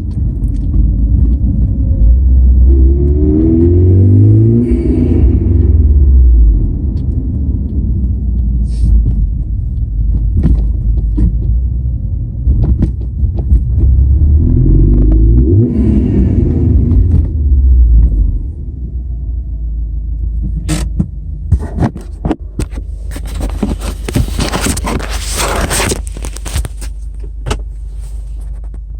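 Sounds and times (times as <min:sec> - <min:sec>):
sharp ticks and knocks: 0:00.0 - 0:04.2, 0:05.6 - 0:15.6
car engine rumbling: 0:00.0 - 0:28.9.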